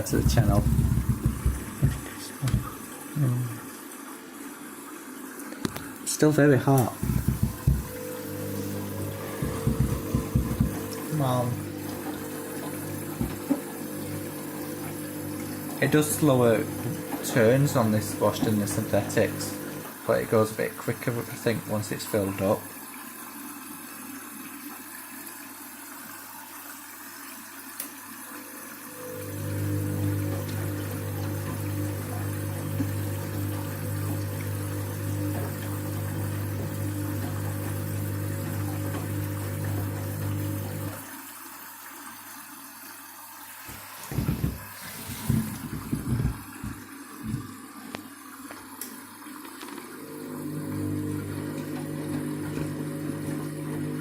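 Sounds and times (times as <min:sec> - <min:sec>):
water sloshing in drum: 0:00.0 - 0:02.9, 0:06.9 - 0:19.9, 0:43.6 - 0:47.8
water hissing into washing machine: 0:00.0 - 0:54.0
water hissing in: 0:06.9 - 0:22.6, 0:43.4 - 0:47.8.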